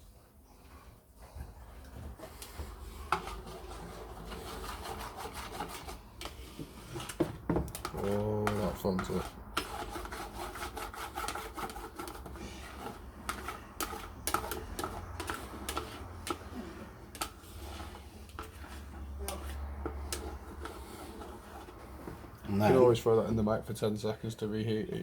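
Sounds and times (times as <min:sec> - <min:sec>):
spatulas scraping grill pan: 0:02.2 - 0:22.9.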